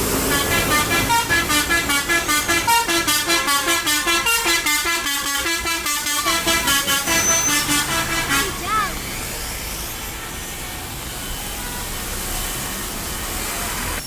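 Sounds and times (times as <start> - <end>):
multi-tone bus horn melody: 0.0 - 9.0, 9.9 - 13.8.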